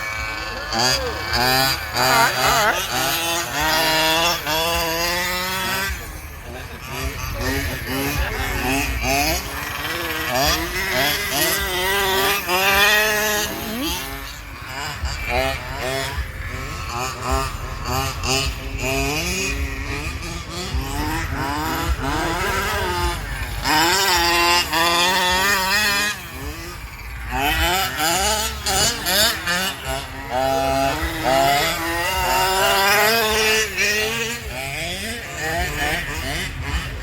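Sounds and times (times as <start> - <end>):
small rc car engines revving: 0.0 - 37.0.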